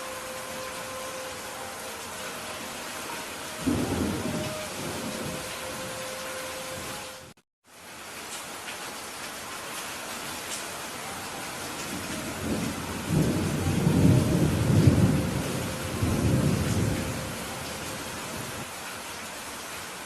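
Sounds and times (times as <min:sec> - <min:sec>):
rain falling on a roof: 0:00.0 - 0:20.0
low rumble of thunder: 0:03.6 - 0:06.0, 0:11.9 - 0:18.6.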